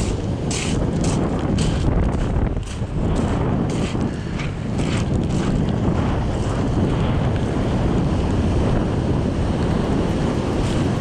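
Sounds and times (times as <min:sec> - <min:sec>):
wind buffeting microphone: 0:00.0 - 0:11.0
ocean surf: 0:09.4 - 0:11.0.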